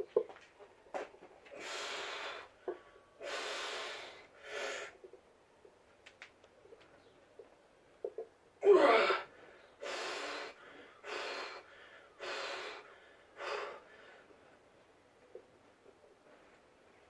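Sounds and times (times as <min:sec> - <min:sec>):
heavy breathing: 0:08.8 - 0:14.6.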